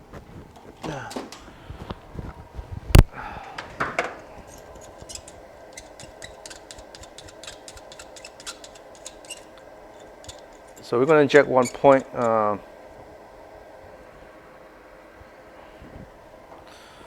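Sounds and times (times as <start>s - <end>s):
steady hum: 0.0s - 17.0s
small tools clicking and tapping: 3.5s - 12.3s.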